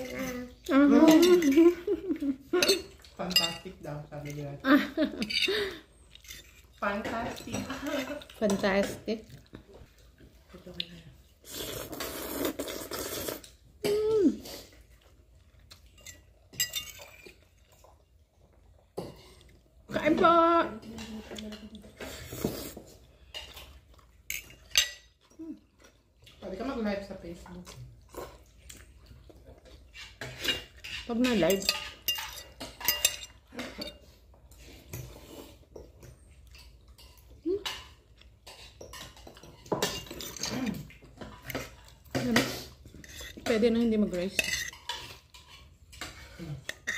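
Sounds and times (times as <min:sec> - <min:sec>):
cutlery clinking on plates: 0:02.5 - 0:04.6, 0:05.2 - 0:09.0, 0:15.8 - 0:17.5, 0:20.8 - 0:25.2, 0:29.6 - 0:46.9
chewing: 0:05.4 - 0:13.8, 0:14.4 - 0:19.9, 0:20.8 - 0:26.4, 0:27.4 - 0:31.1, 0:31.7 - 0:43.6
utensils clicking on plate: 0:36.6 - 0:46.9.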